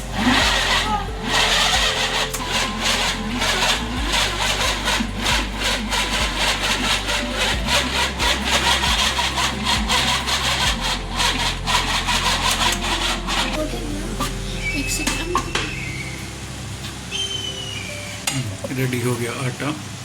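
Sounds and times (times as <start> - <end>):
dough scraping in bowl: 0.0 - 13.6
motor hum: 0.0 - 18.7.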